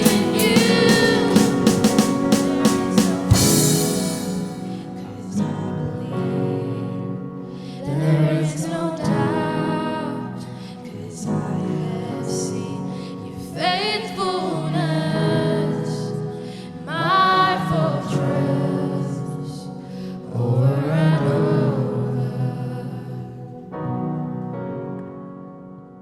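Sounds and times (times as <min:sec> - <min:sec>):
sustained keyboard chords: 0:00.0 - 0:07.5
group of voices singing: 0:00.0 - 0:23.5.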